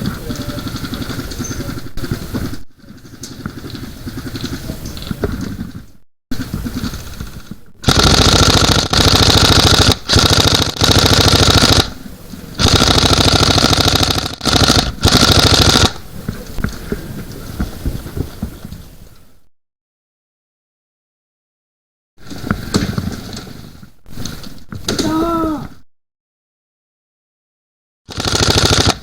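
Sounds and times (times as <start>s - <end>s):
airsoft gun firing bursts: 0.0s - 4.9s, 6.3s - 16.1s, 28.1s - 29.0s.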